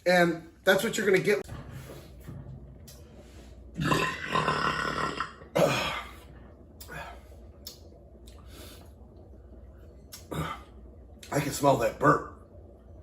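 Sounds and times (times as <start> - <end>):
man burping: 3.8 - 6.1.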